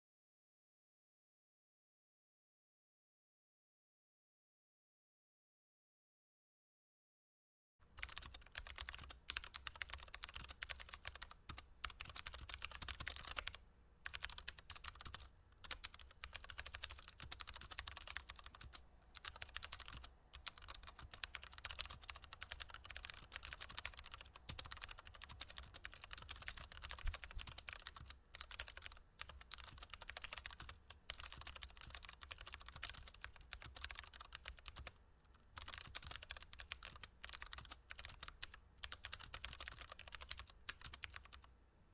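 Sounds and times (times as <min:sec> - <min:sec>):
mechanical keyboard typing: 0:08.0 - 0:34.9, 0:35.5 - 0:41.5.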